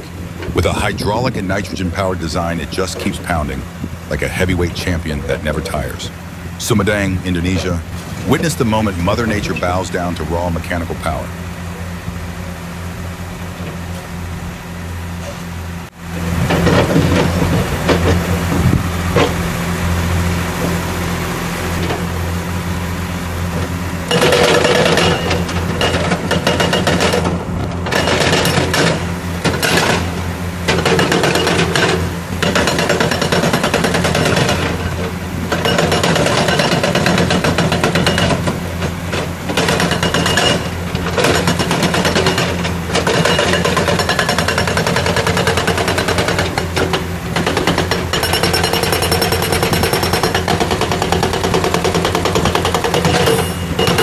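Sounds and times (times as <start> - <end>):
excavator engine running: 0.0 - 54.0
hydraulic breaker hammering rock: 23.5 - 54.0.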